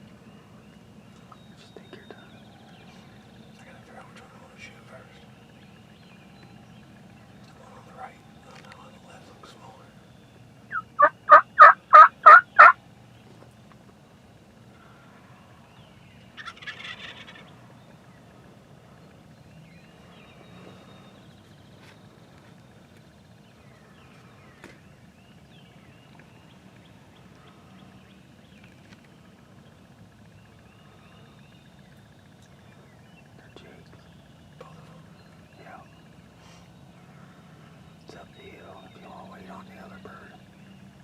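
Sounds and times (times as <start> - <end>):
turkey gobble call: 10.7 - 12.8, 16.4 - 17.6
turkey yelps: 10.7 - 12.8, 16.4 - 17.4.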